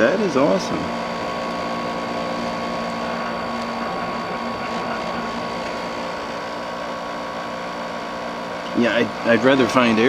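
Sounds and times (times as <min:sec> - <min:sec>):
dehumidifier humming: 0:00.0 - 0:10.0
thin high whine: 0:00.0 - 0:10.0.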